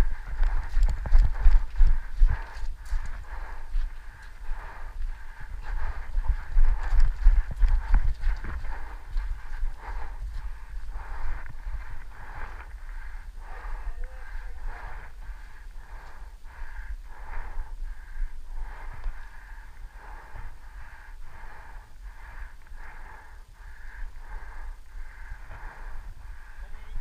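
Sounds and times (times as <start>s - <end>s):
constant low rumble: 0.0s - 27.0s
person breathing hard: 0.0s - 27.0s.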